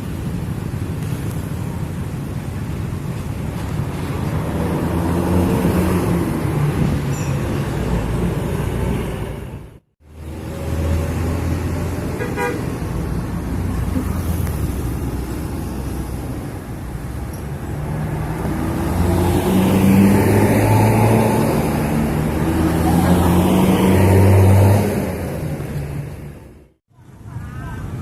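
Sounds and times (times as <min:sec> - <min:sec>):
bus engine running: 0:00.0 - 0:28.0
bus multi-tone horn: 0:12.1 - 0:12.7.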